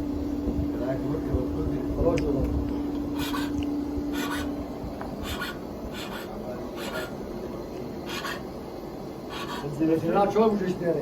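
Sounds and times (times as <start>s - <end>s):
low hum: 0.0s - 9.6s
file rasping on metal: 3.2s - 3.5s, 4.1s - 4.5s, 5.2s - 7.2s, 8.1s - 8.5s, 9.3s - 9.8s.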